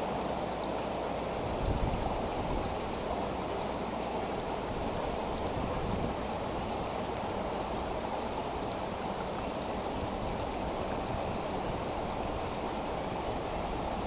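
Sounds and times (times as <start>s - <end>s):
flowing water rushing: 0.0s - 14.0s.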